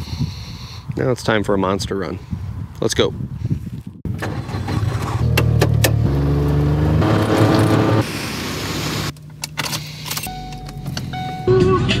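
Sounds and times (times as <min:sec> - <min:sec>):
vehicle engine running: 0:05.0 - 0:10.1.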